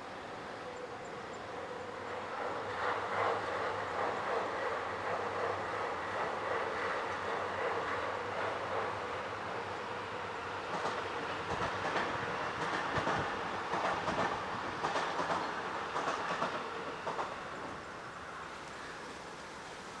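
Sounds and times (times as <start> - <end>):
faint steady noise: 0.0 - 20.0
train wheels clacking over rail joints: 2.4 - 9.6, 10.6 - 17.9.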